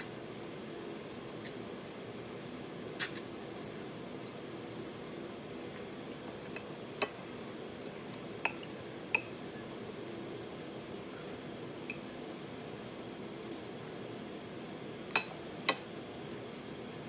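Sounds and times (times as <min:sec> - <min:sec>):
cutlery clinking against a dish: 0:06.5 - 0:09.3, 0:15.1 - 0:15.9.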